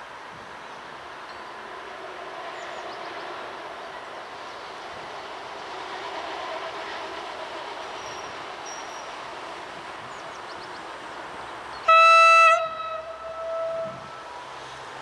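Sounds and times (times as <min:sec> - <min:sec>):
diesel railbus running past: 0:00.0 - 0:15.0
train horn blast: 0:11.8 - 0:14.9.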